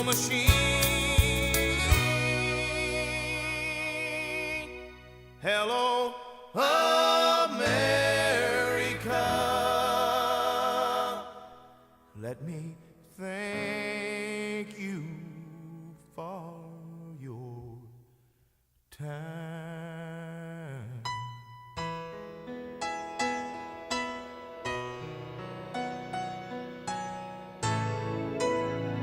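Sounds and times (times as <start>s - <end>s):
country song: 0.0s - 18.0s
piano notes ringing: 21.6s - 29.0s.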